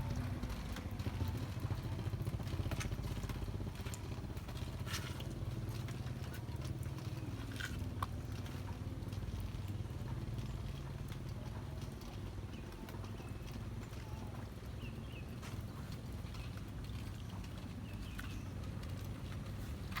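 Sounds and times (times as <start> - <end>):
small motorcycle engine running: 0.0 - 7.6.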